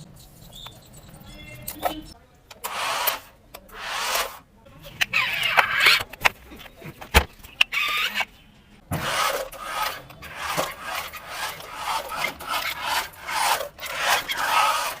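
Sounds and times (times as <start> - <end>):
toy car rasping electric drive: 2.6 - 4.4, 9.0 - 15.0.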